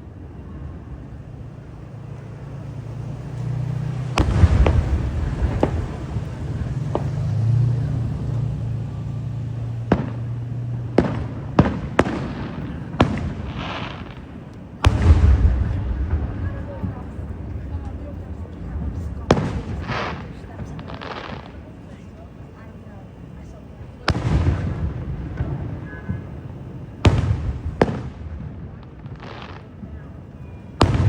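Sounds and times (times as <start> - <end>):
firework shells bursting: 2.5 - 31.0
low rumble: 14.8 - 21.0.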